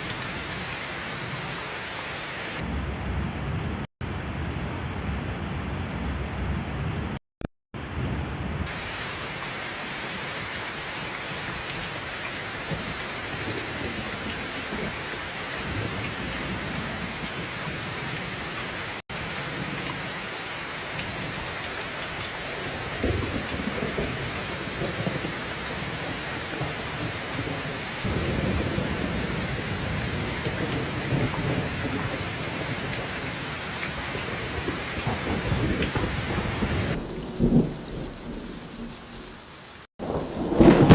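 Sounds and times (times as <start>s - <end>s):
heavy rainfall: 0.0s - 2.6s, 8.7s - 40.9s
low rolling thunder: 11.8s - 18.3s, 22.6s - 40.9s.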